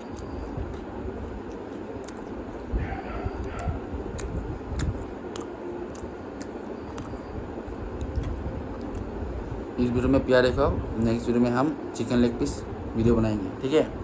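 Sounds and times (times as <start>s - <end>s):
background hum: 0.0s - 14.0s
mouth smacks and clicks: 1.4s - 2.4s, 3.2s - 7.2s, 8.0s - 9.1s.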